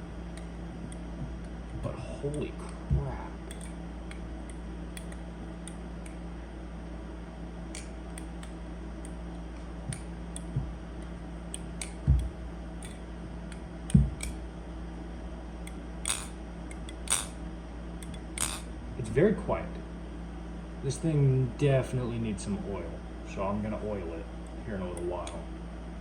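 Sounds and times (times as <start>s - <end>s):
person talking: 1.8s - 3.4s, 19.0s - 19.8s, 20.8s - 25.5s
butterfly knife metallic clicks: 3.5s - 6.2s.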